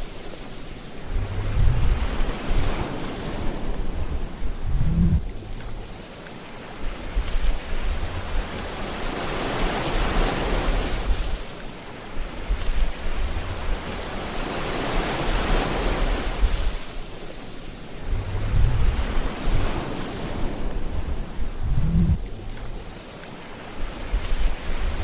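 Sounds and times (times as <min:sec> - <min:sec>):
waves breaking and washing in: 0:00.0 - 0:25.0
low rumble: 0:01.0 - 0:02.8, 0:03.4 - 0:05.9, 0:07.0 - 0:08.7, 0:12.4 - 0:14.2, 0:18.0 - 0:19.8, 0:20.6 - 0:23.0.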